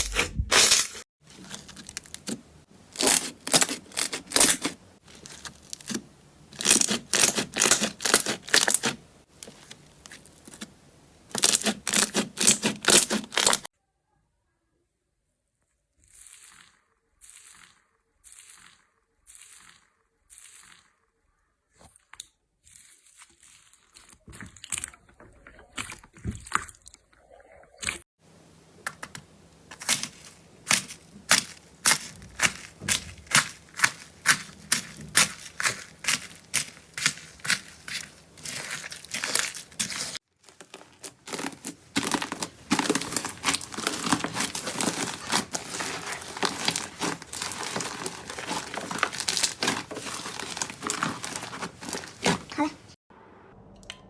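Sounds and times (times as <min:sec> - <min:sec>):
slime crackling and popping: 0:00.0 - 0:10.7, 0:11.3 - 0:13.7, 0:28.9 - 0:52.7.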